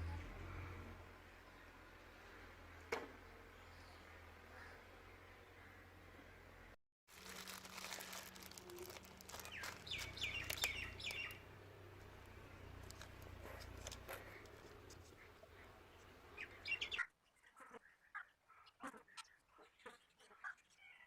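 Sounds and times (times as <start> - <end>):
small birds chirping: 7.1 - 21.0.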